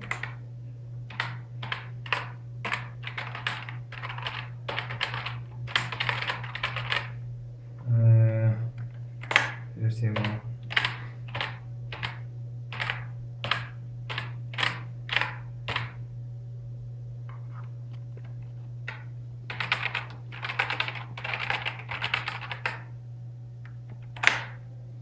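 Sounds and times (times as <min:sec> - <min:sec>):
fast typing on keyboard: 0:00.0 - 0:00.4, 0:01.1 - 0:07.2, 0:09.2 - 0:09.6, 0:10.2 - 0:16.0, 0:18.9 - 0:22.9, 0:24.1 - 0:24.6.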